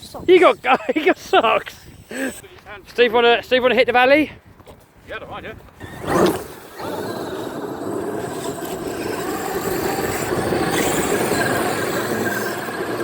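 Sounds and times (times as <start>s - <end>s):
electric motor whine: 5.8s - 13.0s.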